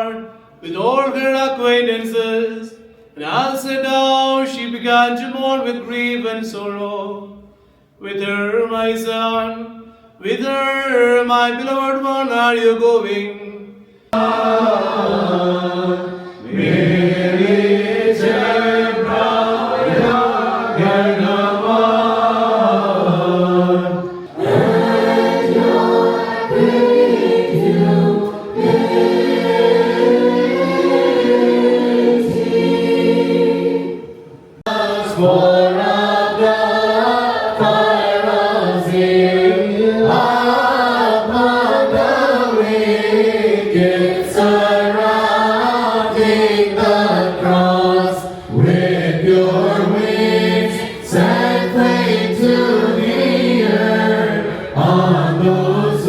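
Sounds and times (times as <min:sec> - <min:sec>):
choir chanting: 0:14.1 - 0:56.0.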